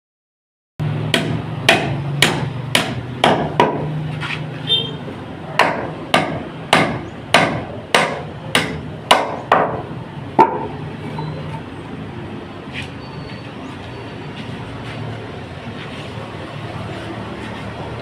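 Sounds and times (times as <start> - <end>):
hammer striking: 1.0 - 4.0, 5.5 - 10.8.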